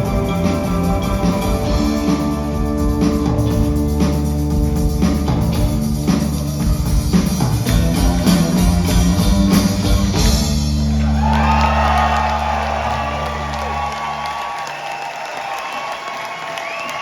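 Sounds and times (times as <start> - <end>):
drums hitting: 0.0 - 11.5
rock band with orchestra: 0.0 - 14.2
audience cheering and whooping: 10.7 - 17.0.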